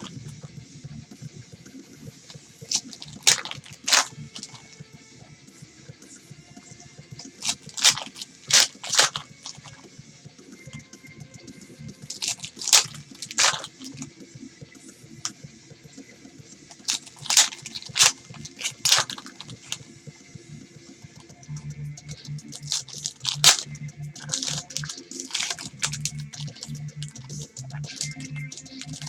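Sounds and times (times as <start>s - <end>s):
card wrappers tearing and crinkling: 2.7s - 4.7s, 7.2s - 9.8s, 12.1s - 14.1s, 16.7s - 19.8s, 22.5s - 29.0s.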